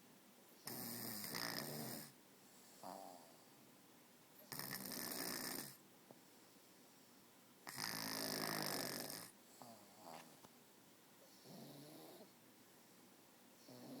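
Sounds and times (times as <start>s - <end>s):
person snoring: 0.6s - 2.1s, 7.7s - 10.2s.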